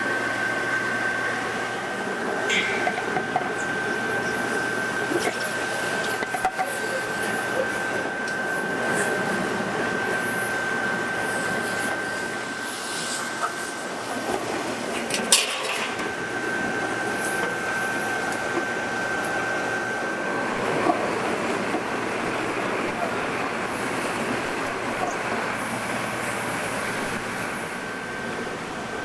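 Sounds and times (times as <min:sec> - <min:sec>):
factory machinery with high whine: 0:00.0 - 0:29.0.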